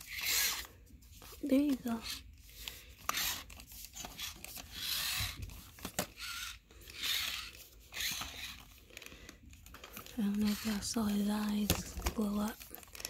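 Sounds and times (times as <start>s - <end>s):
fabric or plastic rustling: 0.0s - 13.0s.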